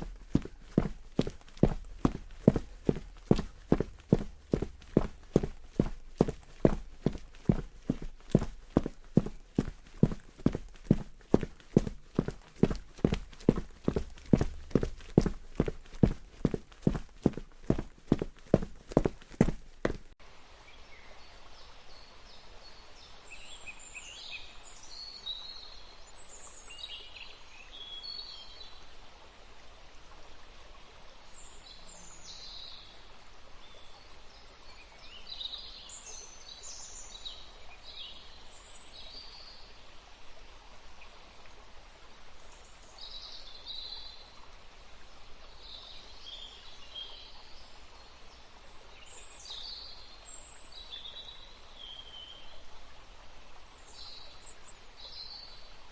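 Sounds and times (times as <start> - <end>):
steady outdoor hiss: 0.0 - 25.0.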